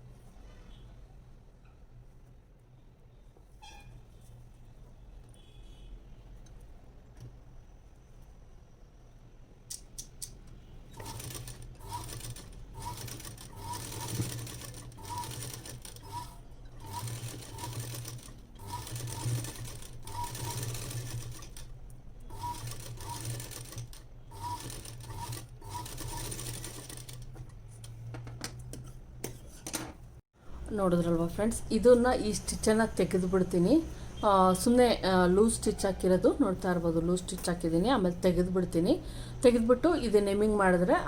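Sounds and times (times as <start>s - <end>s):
sewing machine stitching: 10.9s - 21.7s, 22.3s - 27.4s.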